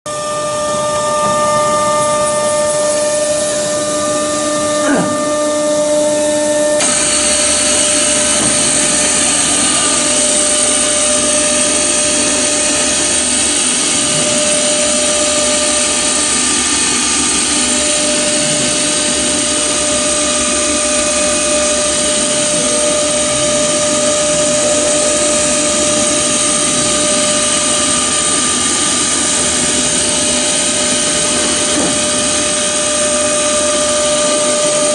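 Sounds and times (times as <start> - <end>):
drilling machine whine: 0.1 - 34.9
high-pitched whine: 0.1 - 34.9
hiss: 2.3 - 20.3.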